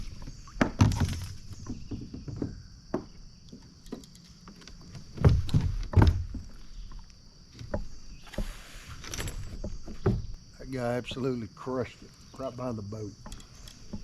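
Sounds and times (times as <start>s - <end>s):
high insect drone: 0.0s - 14.0s
thumps against kayak hull: 5.1s - 6.6s.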